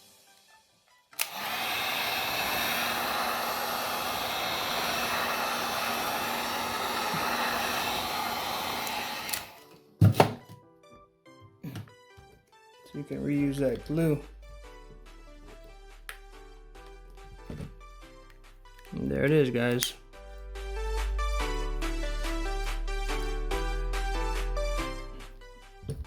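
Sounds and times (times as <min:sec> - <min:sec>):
heat gun blowing air: 0:01.2 - 0:09.7.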